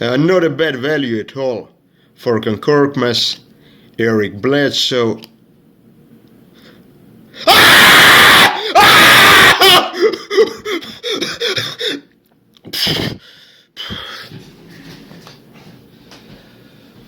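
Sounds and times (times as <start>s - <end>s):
man yelling excitedly: 7.5s - 10.0s
man gasping cries: 8.5s - 12.1s
heavy breathing: 12.7s - 15.2s.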